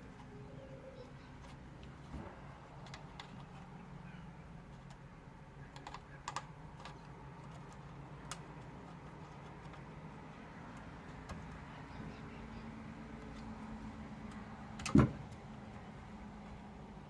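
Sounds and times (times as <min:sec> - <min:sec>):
low steady hum: 0:00.0 - 0:17.0
small plastic parts clicking: 0:02.7 - 0:03.8, 0:04.7 - 0:11.7.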